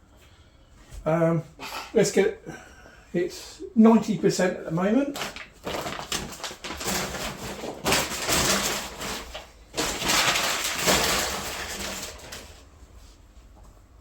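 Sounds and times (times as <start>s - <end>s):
plastic packaging crinkling: 4.9s - 12.7s.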